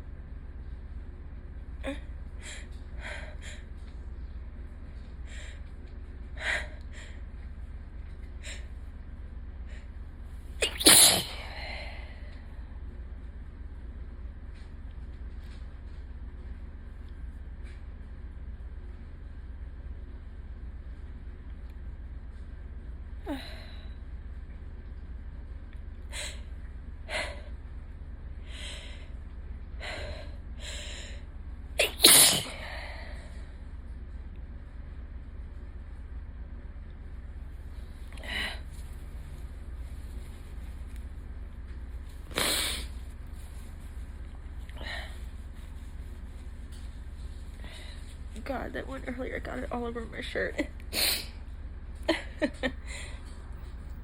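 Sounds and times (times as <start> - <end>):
steady low hum: 0.0 - 54.0
person sneezing: 10.6 - 11.6, 31.8 - 32.8, 42.3 - 42.9.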